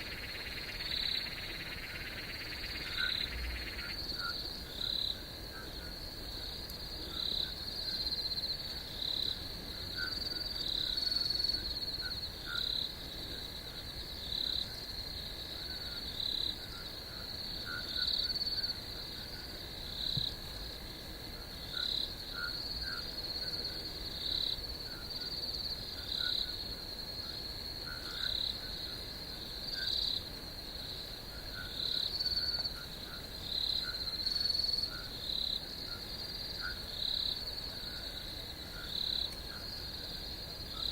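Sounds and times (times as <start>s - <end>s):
frog calls: 0.0s - 6.0s, 9.9s - 13.4s, 27.8s - 29.0s, 31.2s - 40.9s
insect trill: 0.0s - 40.9s.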